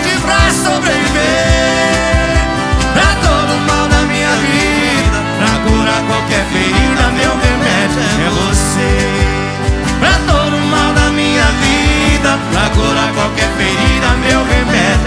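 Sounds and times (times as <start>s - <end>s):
accordion: 0.0s - 15.0s
acoustic guitar: 0.0s - 15.0s
cajon beat: 0.0s - 15.0s.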